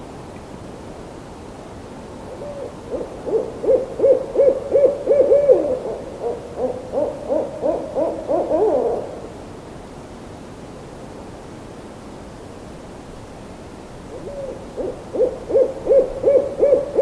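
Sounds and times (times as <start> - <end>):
background hiss: 0.0 - 17.0
owl hooting: 2.3 - 9.4, 14.1 - 17.0.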